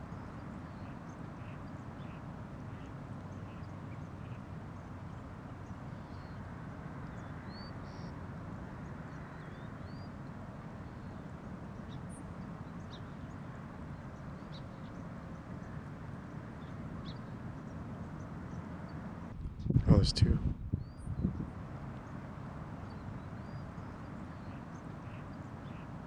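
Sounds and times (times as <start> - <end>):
faint bird chirps: 0.0 - 15.8, 22.8 - 26.0
low outdoor background rumble: 0.0 - 26.0.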